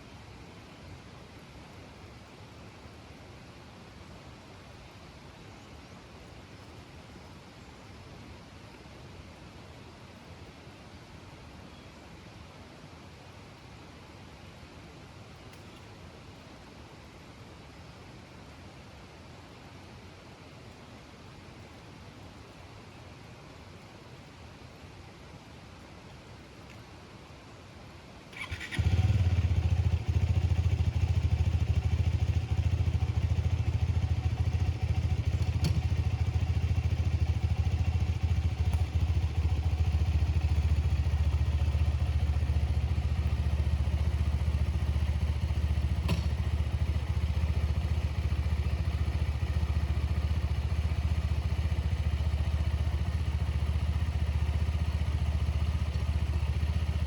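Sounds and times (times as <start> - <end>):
motorcycle engine starting: 28.3 - 57.0.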